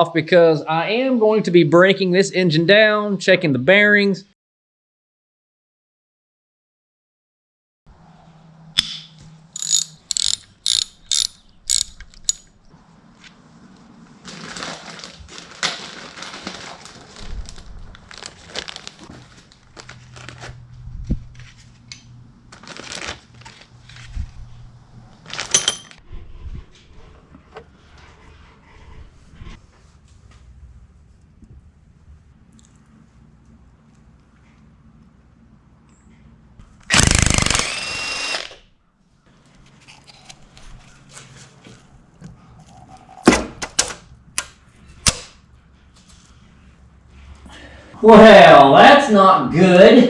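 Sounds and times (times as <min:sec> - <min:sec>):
ratchet wrench clicking: 0:09.6 - 0:12.5
tools and metal parts rattling: 0:09.6 - 0:12.6, 0:25.4 - 0:26.0.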